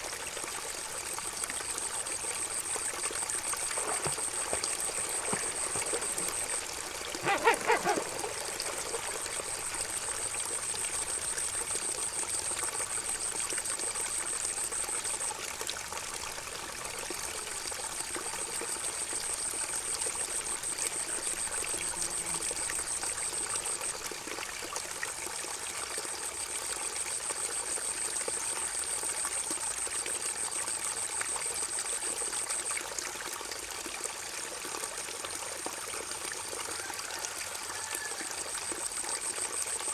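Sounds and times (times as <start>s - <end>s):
river water gurgling: 0.0s - 21.9s.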